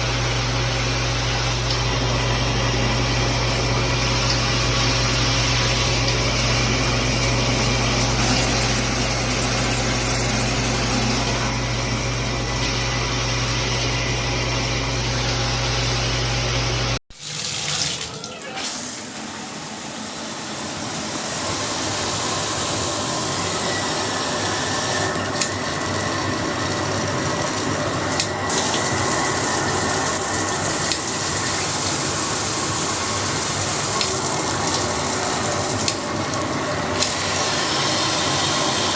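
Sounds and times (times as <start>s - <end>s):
shower head spraying water: 1.6s - 11.5s, 18.6s - 38.9s.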